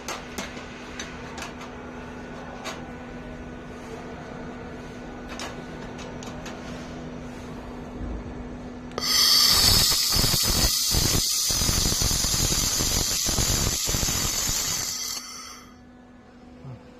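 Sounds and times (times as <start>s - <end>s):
low machine hum: 0.0s - 16.9s
laser welding crackling sizzle: 9.0s - 15.7s.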